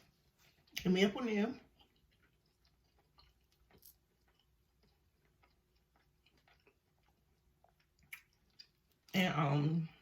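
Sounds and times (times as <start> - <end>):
quiet chewing clicks: 1.7 - 9.1.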